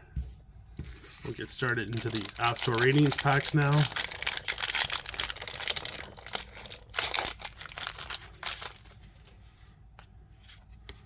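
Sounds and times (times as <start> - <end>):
foil wrapper crinkling: 1.2 - 9.0.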